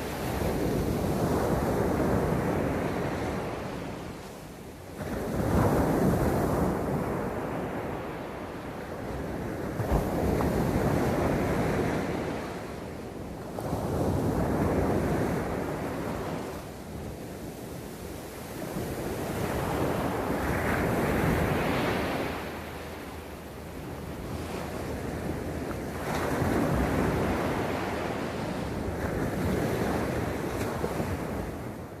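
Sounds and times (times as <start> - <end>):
sea waves breaking on beach: 0.0 - 32.0.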